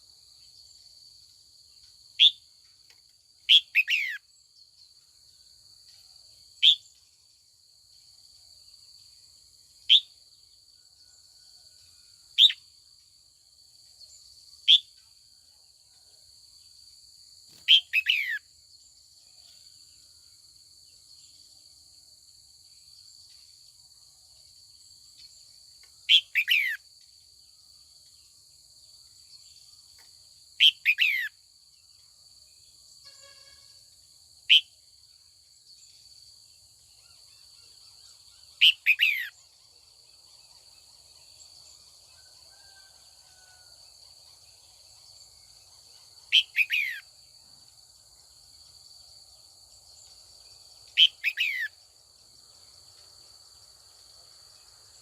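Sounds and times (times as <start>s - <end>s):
high insect drone: 0.0s - 55.0s.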